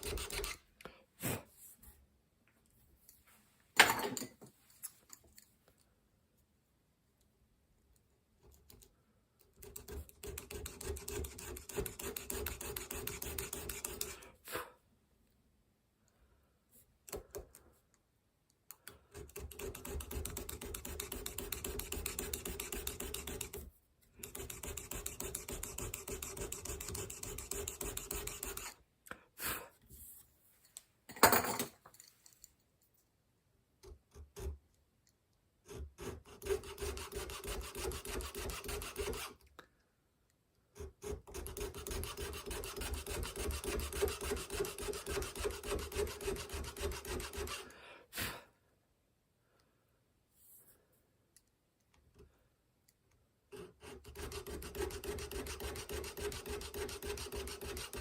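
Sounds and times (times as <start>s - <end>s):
hand tool rasping strokes: 0.0s - 0.6s, 9.7s - 14.2s, 19.2s - 28.8s, 35.7s - 39.4s, 40.8s - 47.7s, 53.5s - 58.0s.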